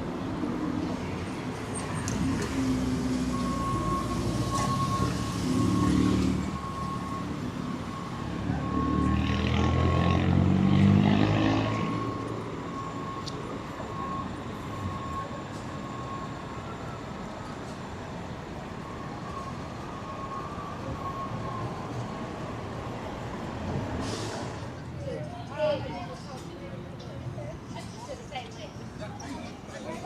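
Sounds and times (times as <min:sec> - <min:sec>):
traffic hum: 0:00.0 - 0:30.0
vehicle passing: 0:05.1 - 0:12.3.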